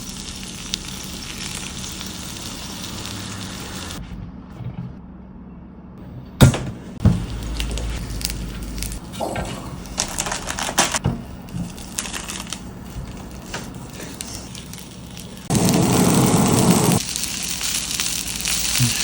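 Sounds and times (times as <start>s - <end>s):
batter sizzling in a pan: 0.0s - 4.0s, 11.5s - 19.0s
low rumble: 4.0s - 17.0s
loud knocks: 6.4s - 7.4s.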